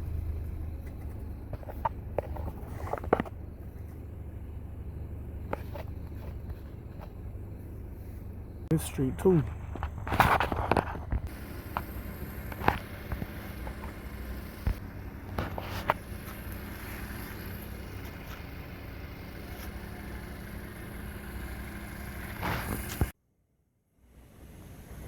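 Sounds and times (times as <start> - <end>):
vehicle engine rumbling: 0.0 - 23.2.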